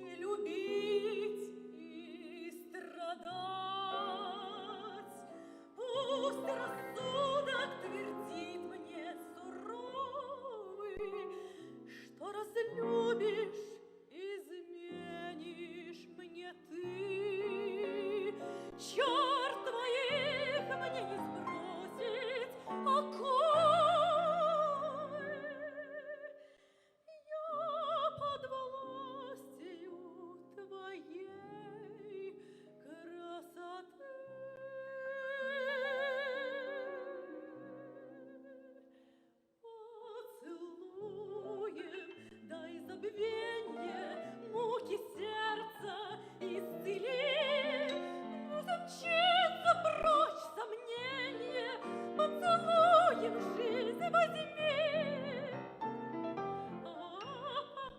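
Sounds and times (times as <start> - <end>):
person singing with vibrato: 0.0 - 26.5, 39.7 - 55.8
piano: 0.0 - 26.6, 27.2 - 57.9.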